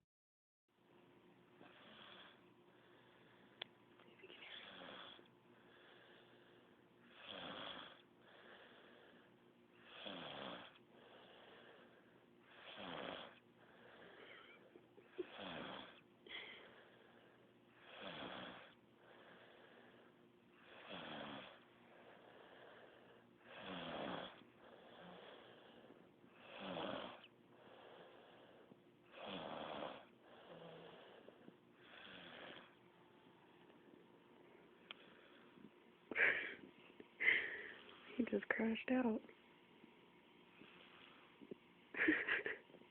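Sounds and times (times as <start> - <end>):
man snoring: 1.6 - 2.4, 4.5 - 14.6, 15.2 - 17.2, 17.8 - 32.8.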